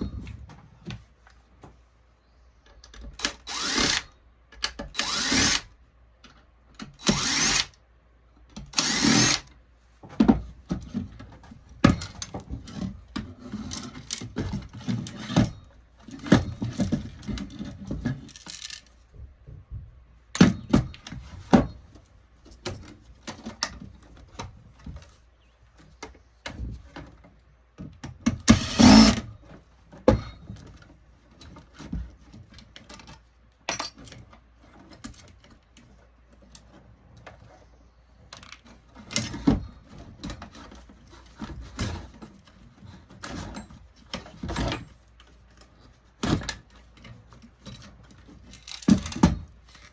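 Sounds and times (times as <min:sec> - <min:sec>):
clicks and rattles of parts: 0:02.6 - 0:49.9
cordless drill driving screws: 0:03.2 - 0:04.1, 0:04.9 - 0:05.7, 0:07.0 - 0:07.8, 0:08.7 - 0:09.5, 0:28.4 - 0:29.2.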